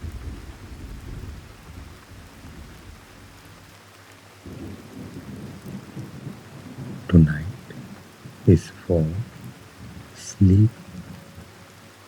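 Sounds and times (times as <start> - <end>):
thunder rumbles: 0.0 - 3.7, 4.4 - 12.0
steady rain: 0.0 - 12.0.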